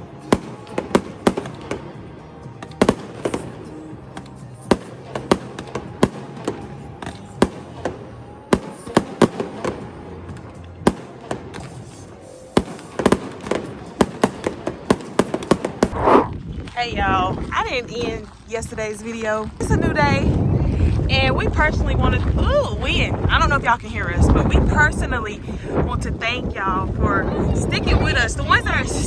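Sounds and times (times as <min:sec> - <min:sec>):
music playing: 0:00.0 - 0:16.0
fireworks bangs and crackles: 0:00.0 - 0:16.3.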